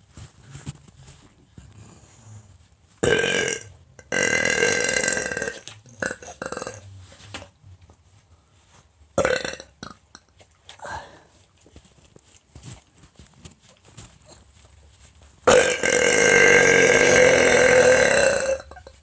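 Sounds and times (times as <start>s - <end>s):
person burping: 3.0s - 6.8s, 9.2s - 10.0s, 15.5s - 19.0s.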